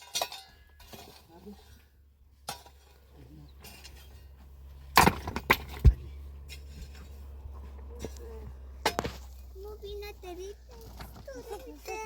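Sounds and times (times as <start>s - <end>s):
steady low hum: 0.3s - 12.0s
sharp wooden knocks and cracks: 4.9s - 6.1s.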